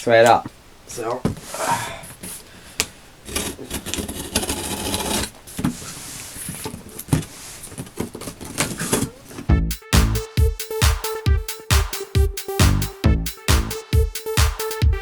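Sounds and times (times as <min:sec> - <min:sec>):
cardboard scraping and rustling: 0:03.3 - 0:09.5.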